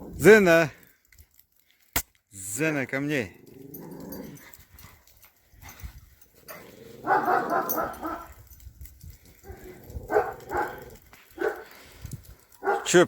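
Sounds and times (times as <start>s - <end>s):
dog barking: 7.0s - 8.4s, 9.5s - 11.7s, 12.6s - 13.0s.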